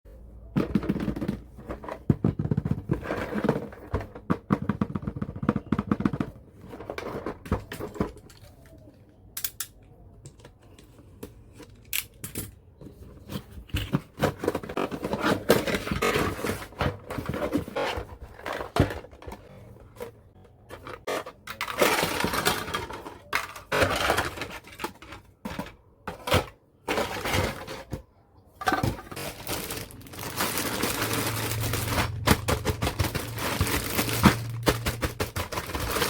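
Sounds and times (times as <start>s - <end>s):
packaging rustling and crinkling: 28.7s - 36.0s.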